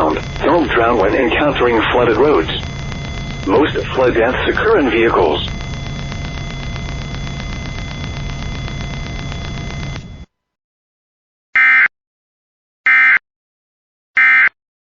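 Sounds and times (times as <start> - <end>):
buzzy data bursts: 0.0 - 10.3
radio static with low hum: 0.0 - 10.3.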